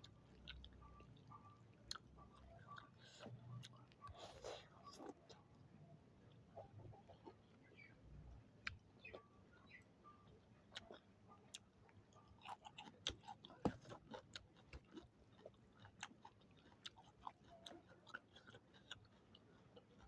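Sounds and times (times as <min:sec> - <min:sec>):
person chewing food: 0:00.0 - 0:05.5, 0:10.3 - 0:20.0.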